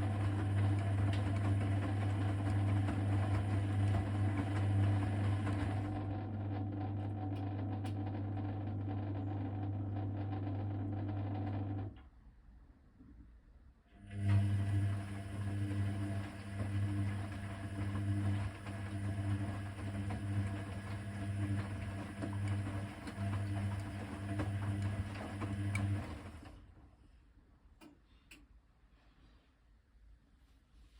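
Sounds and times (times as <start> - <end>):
washing machine humming: 0.0 - 12.1, 14.0 - 27.0.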